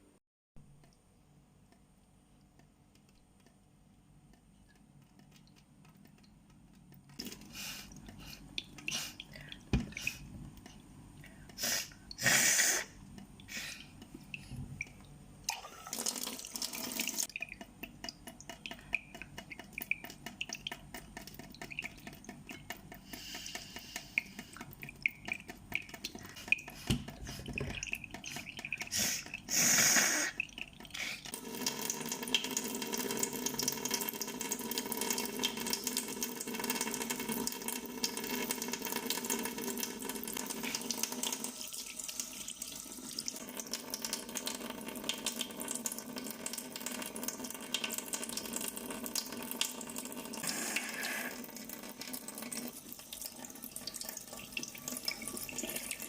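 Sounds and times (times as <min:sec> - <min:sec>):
water splashing into a sink: 0:11.3 - 0:56.0.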